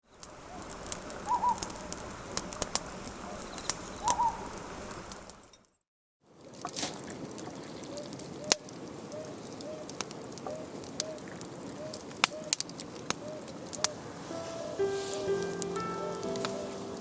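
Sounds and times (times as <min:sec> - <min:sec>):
bird call rising and falling: 0:00.0 - 0:05.5, 0:13.2 - 0:17.0
campfire crackling and popping: 0:00.0 - 0:05.7, 0:09.5 - 0:14.0.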